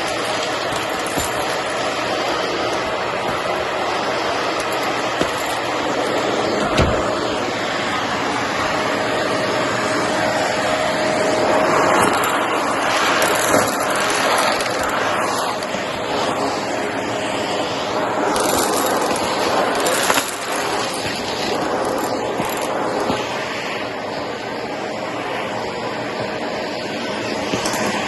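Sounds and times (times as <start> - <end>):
vacuum cleaner running: 0.0 - 28.0.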